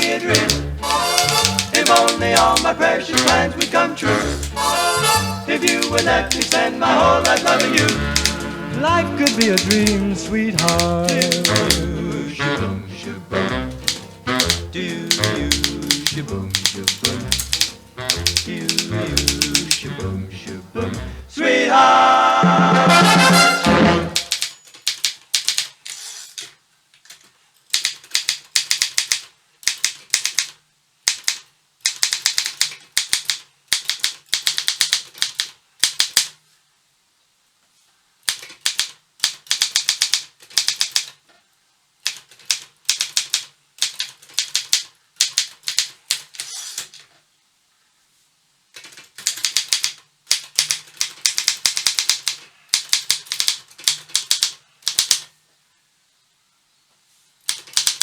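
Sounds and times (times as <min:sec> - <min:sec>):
typewriter key strikes: 0:00.3 - 0:03.7, 0:07.3 - 0:08.4, 0:09.2 - 0:11.8, 0:13.8 - 0:19.8, 0:24.2 - 0:25.7, 0:27.7 - 0:36.3, 0:38.3 - 0:41.1, 0:48.8 - 0:55.2, 0:57.5 - 0:58.0.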